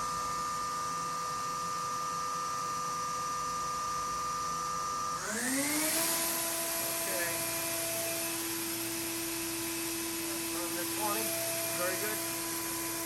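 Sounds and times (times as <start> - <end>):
machine spindle whining: 5.4 - 13.0.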